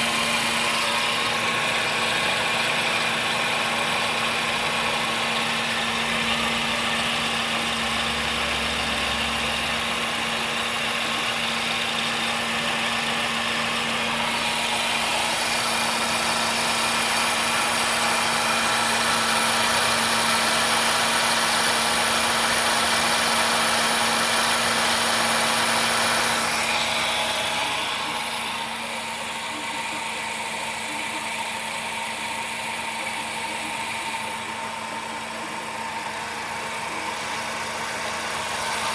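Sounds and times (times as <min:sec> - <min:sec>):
car engine humming: 0:00.0 - 0:38.9.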